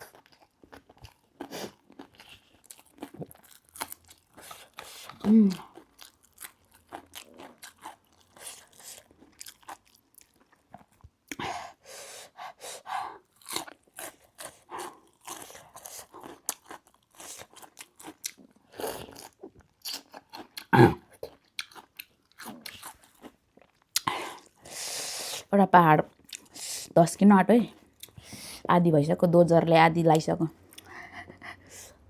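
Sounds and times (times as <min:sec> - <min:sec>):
crunching and chewing snack: 0:00.0 - 0:11.4, 0:13.2 - 0:24.7.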